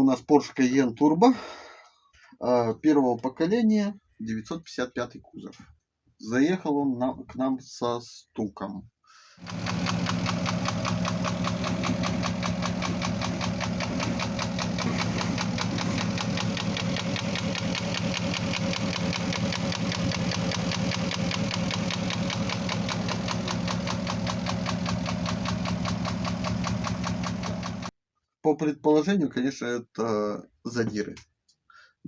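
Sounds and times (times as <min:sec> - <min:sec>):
car engine idling: 0:09.4 - 0:27.9
engine ticking knock: 0:09.4 - 0:27.9.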